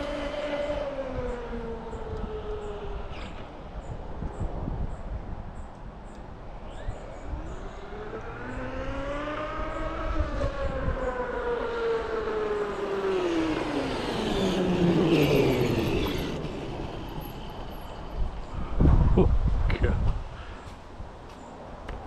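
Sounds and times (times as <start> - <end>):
electric toy car motor whine: 12.8 - 18.2
tyre and drive noise: 12.8 - 19.1.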